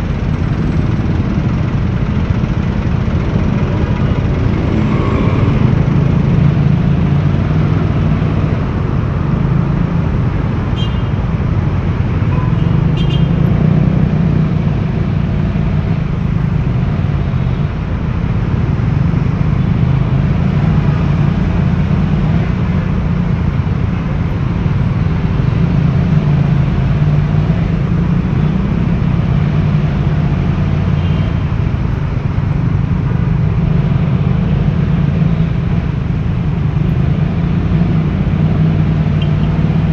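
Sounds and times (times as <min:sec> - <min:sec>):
motorcycle engine running: 0:00.0 - 0:09.8
wind and road noise: 0:00.0 - 0:39.9.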